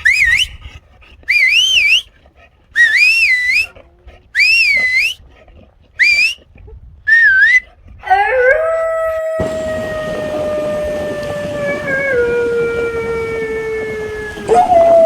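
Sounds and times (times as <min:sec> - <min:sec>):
warbling whistle: 0:00.0 - 0:00.6, 0:01.3 - 0:02.1, 0:02.8 - 0:03.7, 0:04.4 - 0:05.2, 0:06.0 - 0:06.4, 0:07.1 - 0:07.6, 0:09.4 - 0:15.0.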